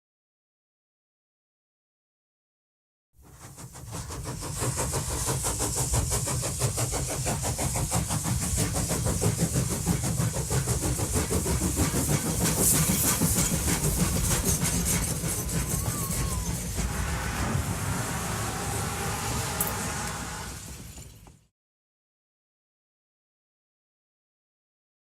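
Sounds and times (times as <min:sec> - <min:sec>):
mechanical rumble with hiss: 0:03.3 - 0:21.4.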